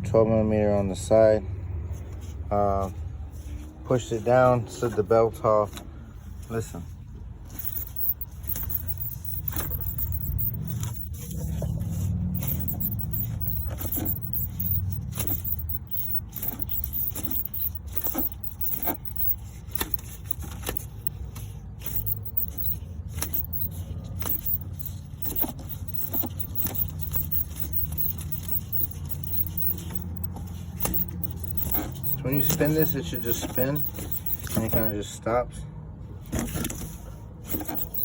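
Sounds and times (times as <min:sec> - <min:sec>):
irregular clicks and scraping: 0:07.5 - 0:34.9, 0:36.3 - 0:38.0
car engine running: 0:07.6 - 0:34.9.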